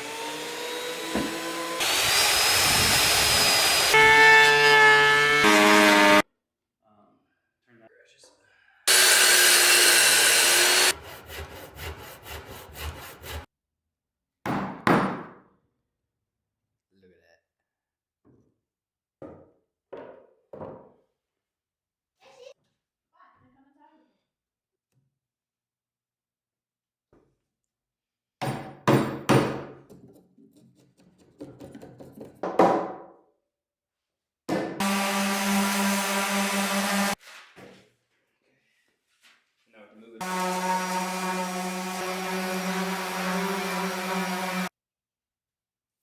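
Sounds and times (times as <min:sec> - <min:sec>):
back-and-forth strokes on wood: 0:00.0 - 0:06.2, 0:08.9 - 0:13.5, 0:40.2 - 0:44.7
woodworking power tool whining: 0:00.0 - 0:06.2, 0:08.9 - 0:13.4, 0:34.8 - 0:37.2, 0:40.2 - 0:44.7.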